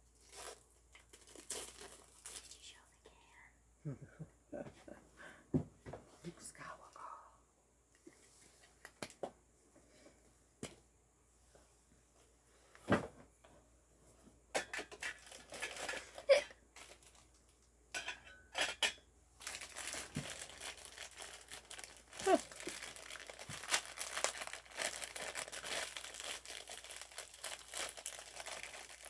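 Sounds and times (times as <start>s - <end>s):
plastic packaging crinkling: 0.2s - 2.7s, 15.1s - 17.5s, 19.4s - 29.0s.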